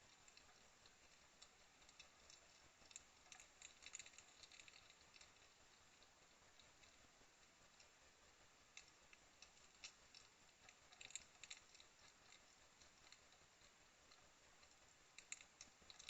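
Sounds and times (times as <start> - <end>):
low steady hiss: 0.0 - 16.0
hedgehogs chewing clicks: 0.1 - 8.0, 8.6 - 16.0.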